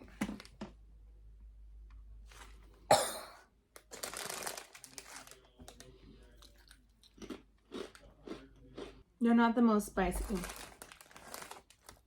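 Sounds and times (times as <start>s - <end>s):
person coughing: 2.9s - 3.4s
crinkly bag rustling: 3.8s - 5.9s, 10.1s - 12.0s.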